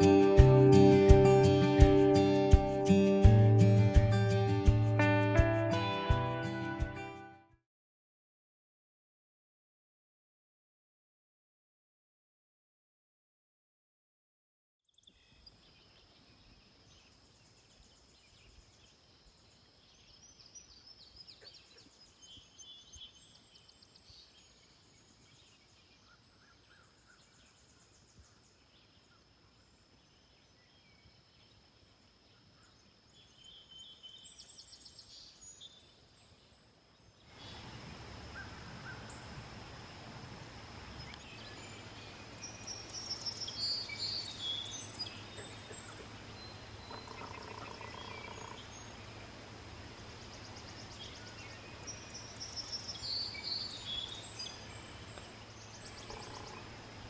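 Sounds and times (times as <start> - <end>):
birds calling and singing: 14.9 - 31.6, 32.3 - 39.4, 40.8 - 57.0
background hiss: 15.2 - 57.0.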